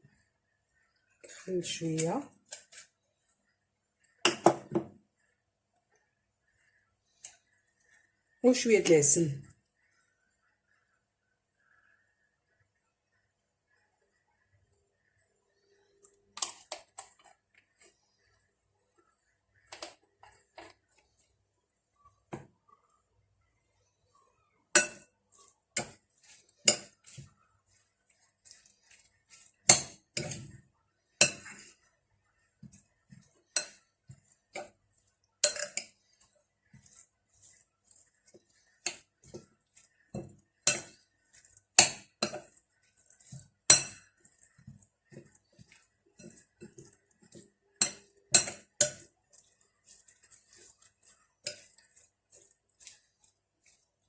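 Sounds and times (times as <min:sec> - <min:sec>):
utensil clinking against dish: 0:41.8 - 0:52.0.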